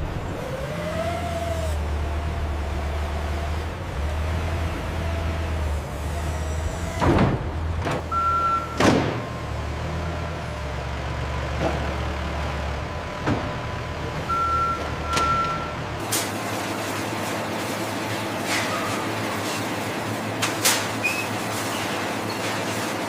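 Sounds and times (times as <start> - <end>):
reversing alarm beeps: 8.1 - 9.6, 14.3 - 15.8.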